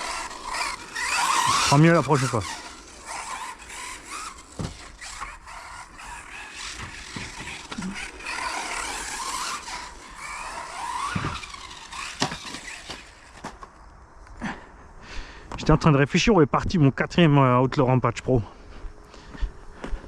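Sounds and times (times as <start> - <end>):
electric motor whining: 0.0 - 13.7
tyres on carpet: 0.0 - 13.8.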